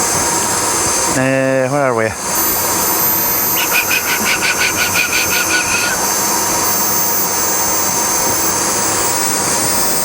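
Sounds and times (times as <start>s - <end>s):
grinder motor running: 2.4s - 9.0s
rapid pulsing sound: 2.9s - 6.6s.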